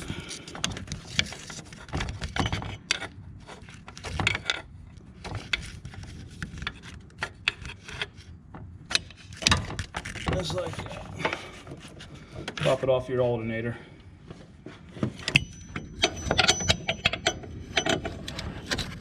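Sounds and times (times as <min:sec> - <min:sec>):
belt rubbing and scraping: 0:00.0 - 0:12.8
tool and metal clicks and knocks: 0:15.0 - 0:19.0.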